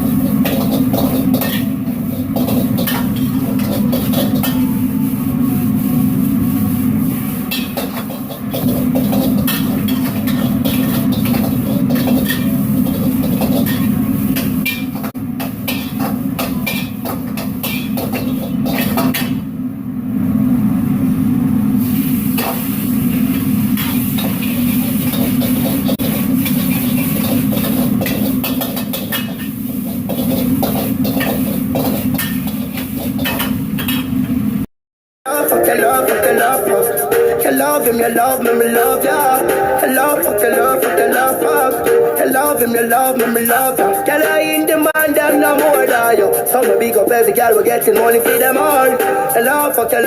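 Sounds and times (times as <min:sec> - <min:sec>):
utensil scraping metal wok: 0:00.0 - 0:19.5, 0:21.8 - 0:34.4
wok burner roaring: 0:00.0 - 0:34.7, 0:35.3 - 0:50.0.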